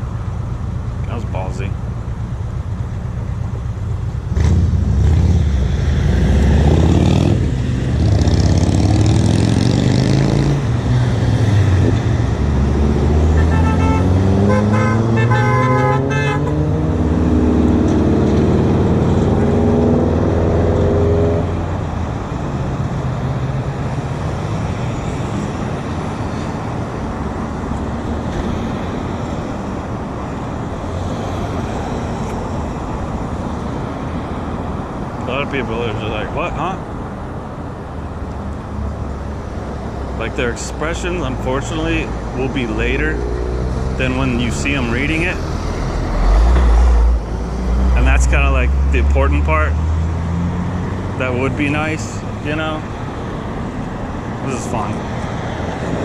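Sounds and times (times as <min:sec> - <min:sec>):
road noise: 0:00.0 - 0:56.0
vehicle engine accelerating: 0:04.2 - 0:36.7, 0:38.2 - 0:56.0
car horn honking: 0:13.3 - 0:16.7.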